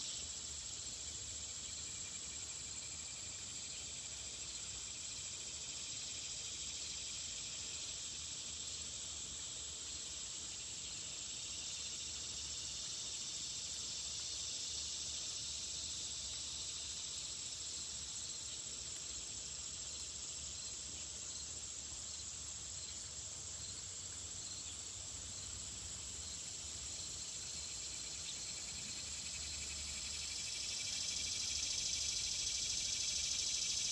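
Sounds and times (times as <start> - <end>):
insect chorus: 0.0 - 33.9.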